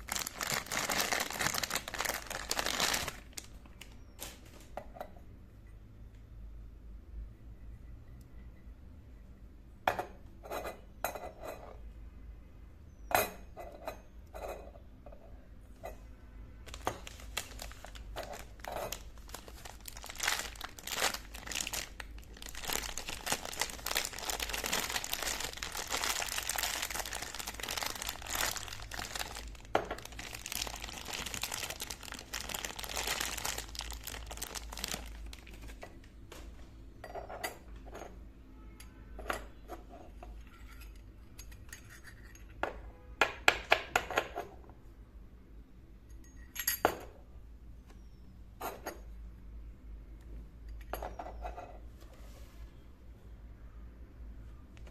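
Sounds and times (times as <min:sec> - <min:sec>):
packaging crinkling: 0:00.0 - 0:04.6, 0:16.7 - 0:35.8.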